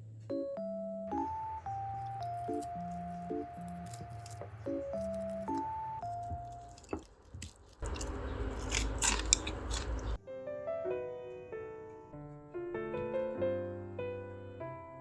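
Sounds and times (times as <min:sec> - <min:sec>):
light piano music: 0:00.0 - 0:15.0
crackling crunching noise: 0:01.8 - 0:10.2.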